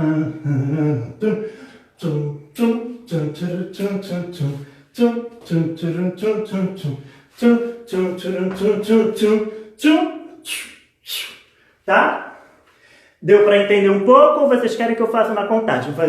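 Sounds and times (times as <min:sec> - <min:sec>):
man singing unaccompanied: 0:00.0 - 0:10.7.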